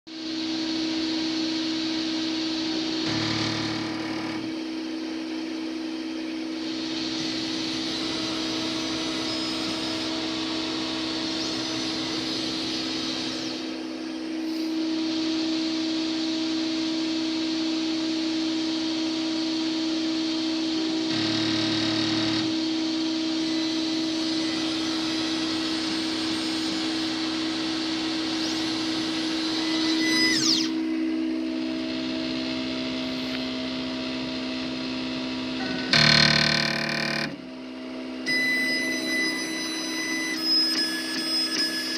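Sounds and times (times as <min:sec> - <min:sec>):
laser engraver hum: 0:00.7 - 0:41.9
whines rising and falling: 0:06.6 - 0:37.5.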